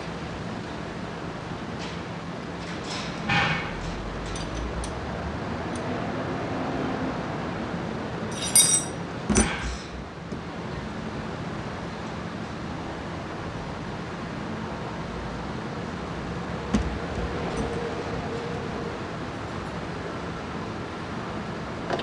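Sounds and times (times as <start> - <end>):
metal tools clinking: 3.7 - 5.0, 8.3 - 10.0.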